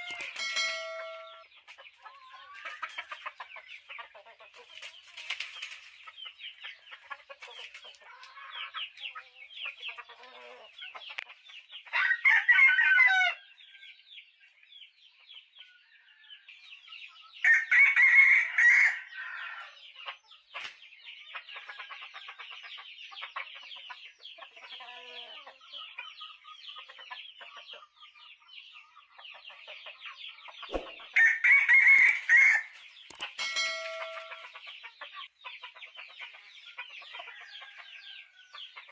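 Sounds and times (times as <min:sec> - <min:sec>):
rooster crowing: 0:00.0 - 0:01.4, 0:31.2 - 0:32.7
chickens clucking and cheeping: 0:00.0 - 0:38.9.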